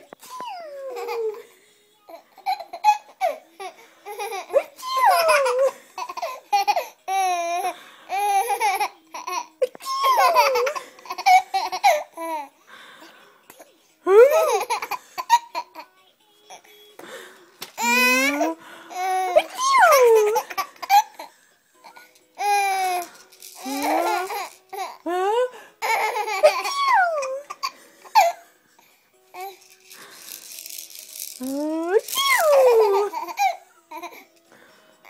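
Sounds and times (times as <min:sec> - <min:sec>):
baby laughing: 0:00.2 - 0:01.4, 0:02.4 - 0:12.5, 0:14.1 - 0:15.9, 0:17.8 - 0:21.3, 0:22.4 - 0:28.4, 0:31.4 - 0:34.2.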